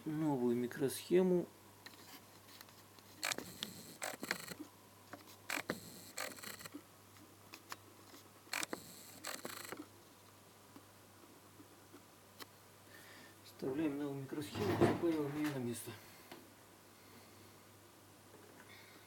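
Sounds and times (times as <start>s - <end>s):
small clicks and scrapes of microchip: 1.9s - 6.8s, 7.5s - 9.8s.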